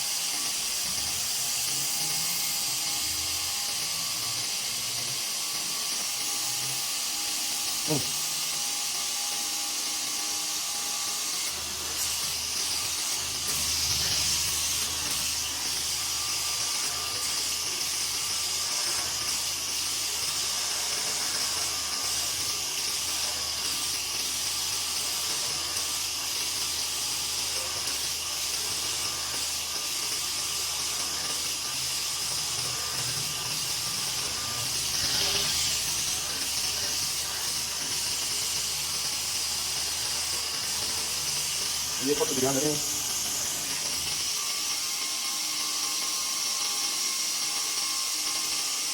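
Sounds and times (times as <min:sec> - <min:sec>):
belt grinder hissing: 0:00.0 - 0:48.9.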